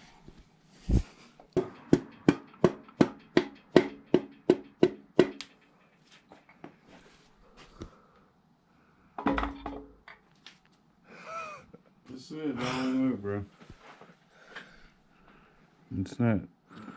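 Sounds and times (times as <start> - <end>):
sharp even knocks: 1.6 - 5.6.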